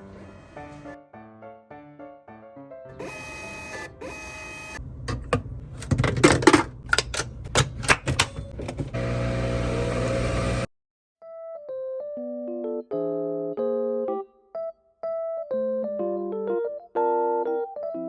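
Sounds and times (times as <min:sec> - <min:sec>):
soft piano music: 0:00.0 - 0:04.0, 0:11.2 - 0:18.0.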